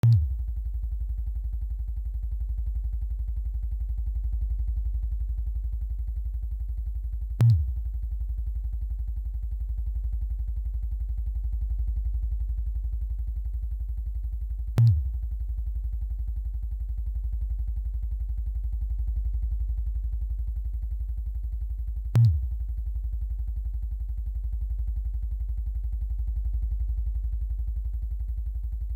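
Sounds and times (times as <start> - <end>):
vibrator buzzing: 0.0 - 0.5, 7.4 - 7.9, 14.8 - 15.4, 22.2 - 22.7.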